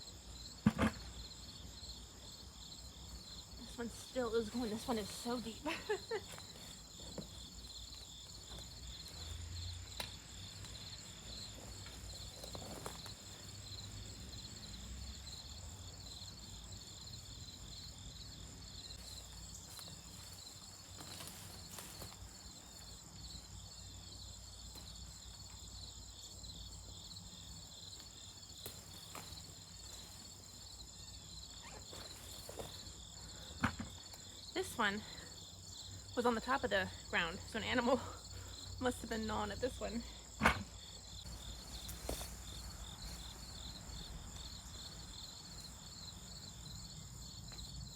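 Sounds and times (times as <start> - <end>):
insects chirring: 0.0 - 47.9
digging in garden soil: 3.7 - 14.3, 19.0 - 22.9.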